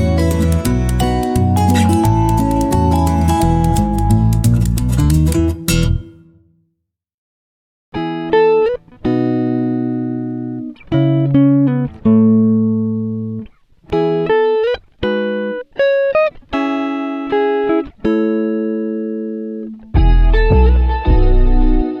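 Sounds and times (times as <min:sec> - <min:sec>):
plucked guitar melody: 0:00.0 - 0:06.5, 0:08.0 - 0:22.0.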